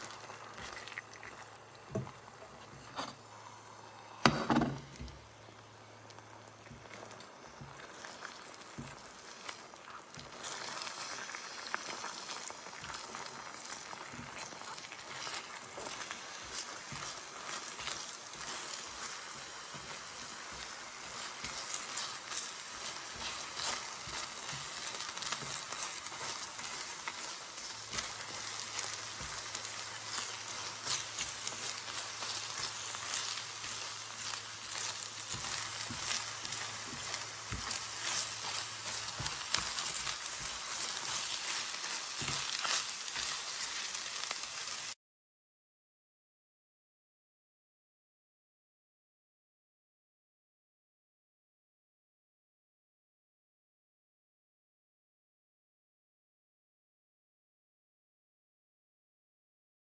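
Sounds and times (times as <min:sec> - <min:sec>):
food frying with crackles: 0:00.0 - 0:45.0.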